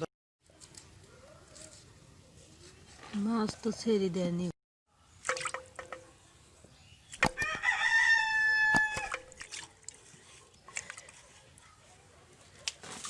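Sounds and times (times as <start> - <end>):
sharp knock: 7.2 - 7.6
rooster crowing: 7.3 - 9.3.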